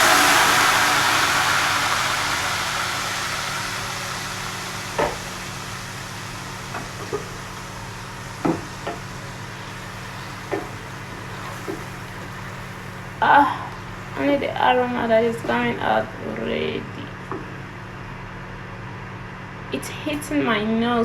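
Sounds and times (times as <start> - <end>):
paste sizzling in hot oil: 0.0 - 16.3
faint steady hum: 0.0 - 21.0.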